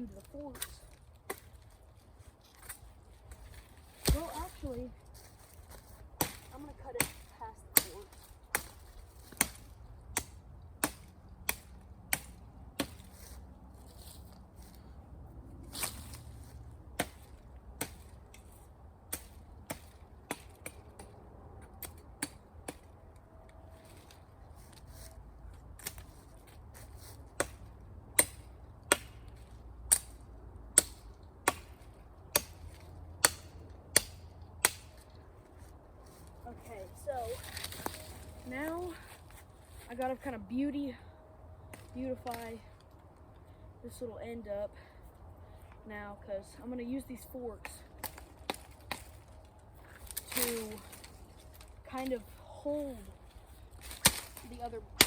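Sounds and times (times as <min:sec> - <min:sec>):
machete chopping tree trunk: 0:00.5 - 0:01.6, 0:03.9 - 0:04.7, 0:06.2 - 0:13.3, 0:16.9 - 0:21.2, 0:21.8 - 0:22.9, 0:27.3 - 0:35.0, 0:48.0 - 0:49.2, 0:53.8 - 0:55.0.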